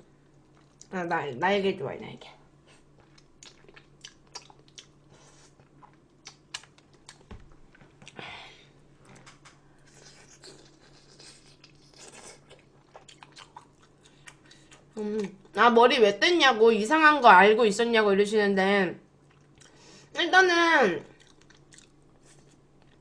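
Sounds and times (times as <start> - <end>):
faint steady hum: 0.0 - 23.0
person chewing: 0.4 - 0.9, 2.7 - 8.2, 9.1 - 15.5, 19.2 - 19.8, 21.1 - 23.0.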